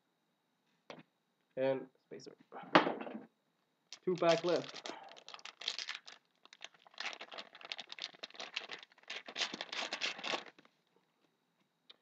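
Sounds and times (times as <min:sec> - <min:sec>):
wrapper tearing and crinkling: 0:04.0 - 0:10.7.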